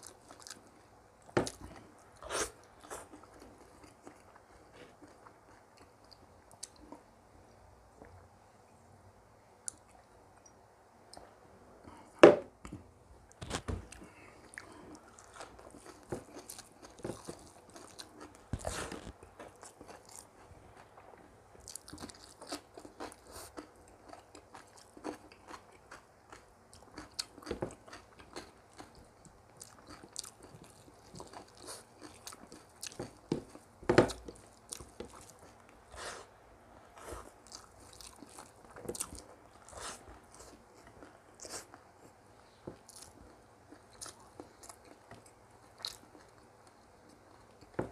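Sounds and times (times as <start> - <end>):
person chewing and biting food: 13.4 - 29.0, 37.1 - 41.8.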